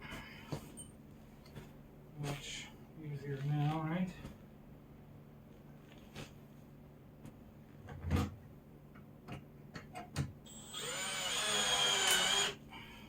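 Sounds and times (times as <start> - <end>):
drill driving screw into wood: 10.5 - 12.6.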